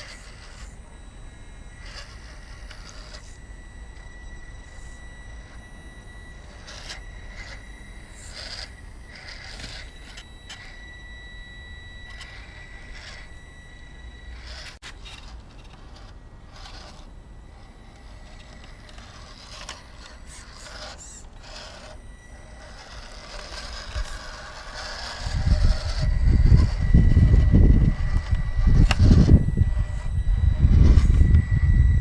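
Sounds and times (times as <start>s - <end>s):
small electric motor whine: 0.0s - 32.0s
clicks and scrapes: 1.6s - 10.8s.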